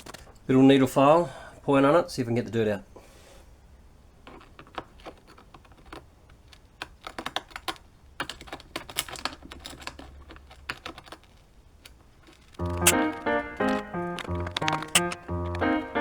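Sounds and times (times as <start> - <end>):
needle file scraping metal screw: 4.2 - 15.6.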